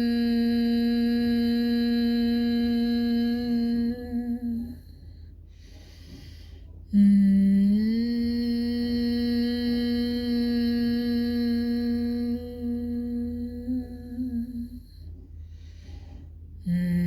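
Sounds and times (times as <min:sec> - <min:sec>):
nasal humming: 0:00.0 - 0:17.0
soft in-breath: 0:04.8 - 0:06.8, 0:15.0 - 0:16.8.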